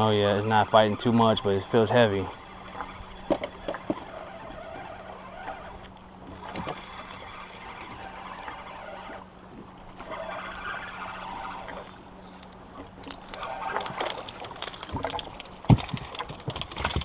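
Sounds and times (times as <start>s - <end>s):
steady low hum: 0.0s - 17.0s
water noise: 0.0s - 17.0s
light clicks and rustles: 11.3s - 17.0s.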